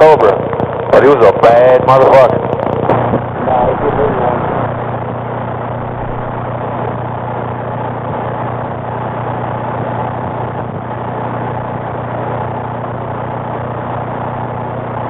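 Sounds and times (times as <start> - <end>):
radio static: 1.0 - 7.5
low engine-like hum: 2.5 - 15.0.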